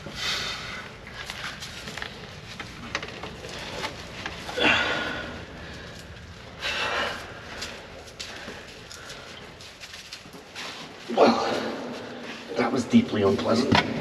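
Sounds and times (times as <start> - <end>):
person exhaling heavily: 4.5 - 6.0.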